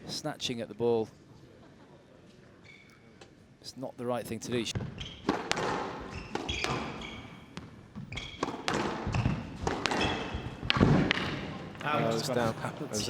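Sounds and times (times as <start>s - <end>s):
squash ball strikes: 4.8s - 11.8s
shoes squeaking on wooden floor: 4.8s - 11.9s.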